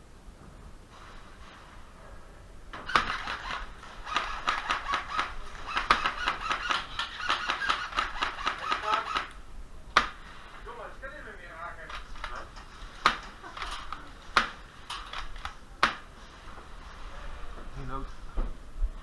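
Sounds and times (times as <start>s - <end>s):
airsoft guns firing: 2.8s - 10.6s, 11.8s - 16.1s.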